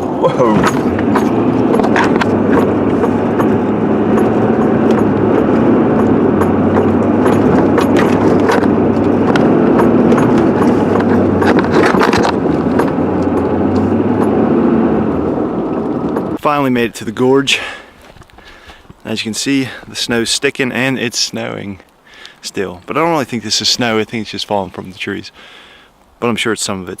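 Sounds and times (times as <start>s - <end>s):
truck engine hum: 0.0s - 18.0s
road noise: 0.0s - 27.0s
clicks and knocks: 0.6s - 14.4s.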